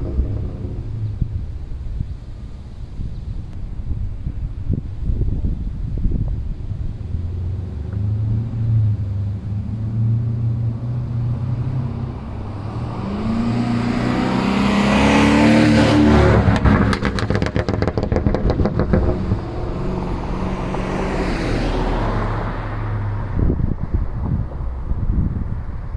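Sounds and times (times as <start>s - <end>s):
car exhaust revving: 0.0s - 2.9s, 7.1s - 24.8s
exhaust crackles and pops: 0.0s - 3.7s, 16.3s - 20.2s.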